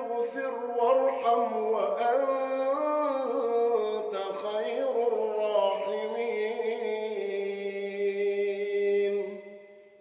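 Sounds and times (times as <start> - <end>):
man chanting melodically: 0.0 - 9.5.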